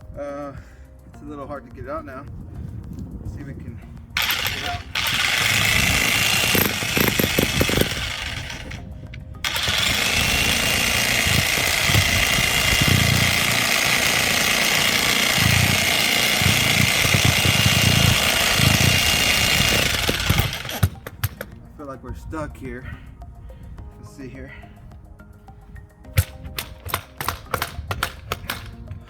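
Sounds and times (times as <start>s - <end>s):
electric jackhammer hammering: 4.2s - 21.6s, 26.1s - 29.0s.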